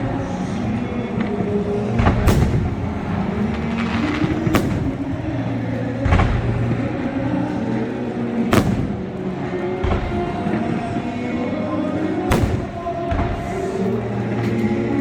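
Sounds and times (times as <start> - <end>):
music playing: 0.0 - 15.0
fireworks booming: 1.2 - 6.8, 8.5 - 9.2, 12.3 - 14.7.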